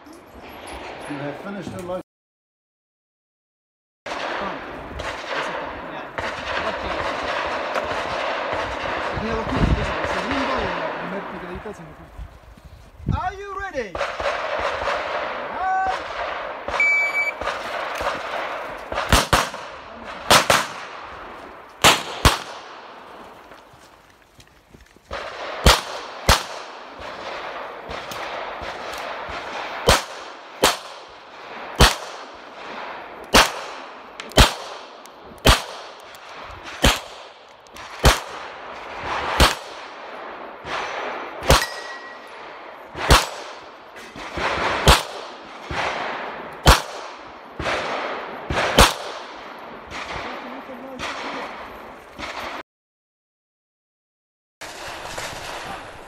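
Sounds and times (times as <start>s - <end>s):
pistol shots with echo: 4.1s - 11.4s, 14.0s - 23.0s, 25.1s - 52.6s
shot timer beep: 16.8s - 17.4s.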